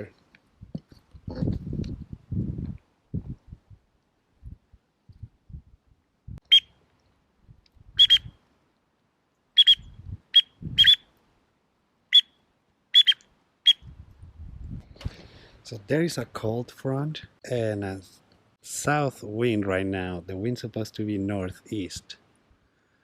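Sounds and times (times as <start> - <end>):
high whistled peeps: 6.4 - 6.8, 8.0 - 8.4, 9.6 - 11.1, 12.1 - 12.4, 13.0 - 13.9.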